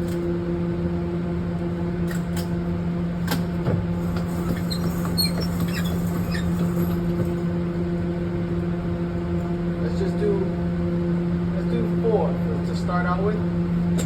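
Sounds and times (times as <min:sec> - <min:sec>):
ventilation fans humming: 0:00.0 - 0:14.0
paper target clicks and squeaks: 0:04.1 - 0:07.0.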